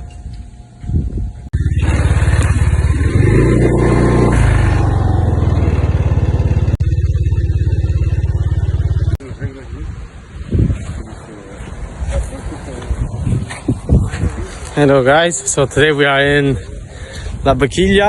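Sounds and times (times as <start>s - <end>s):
motorcycle engine running: 1.2s - 9.4s.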